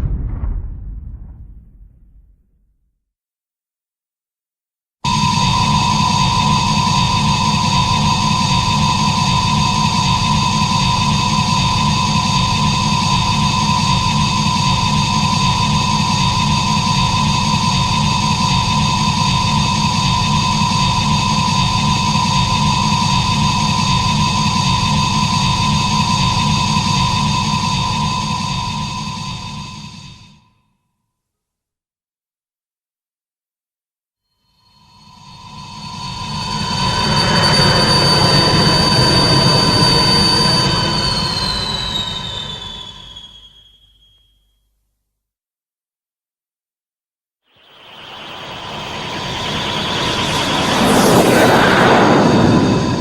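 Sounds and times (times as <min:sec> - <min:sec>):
low fluttering rumble: 0:00.0 - 0:02.9, 0:48.7 - 0:53.0
monster drone with high whistle: 0:05.1 - 0:30.5, 0:34.4 - 0:44.5, 0:47.5 - 0:53.0.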